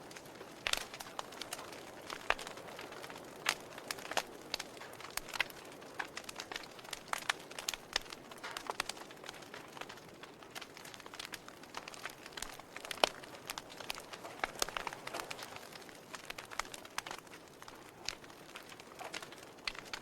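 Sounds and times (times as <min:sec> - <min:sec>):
soft fire hiss: 0:00.0 - 0:20.0
wood fire crackling and popping: 0:00.0 - 0:20.0.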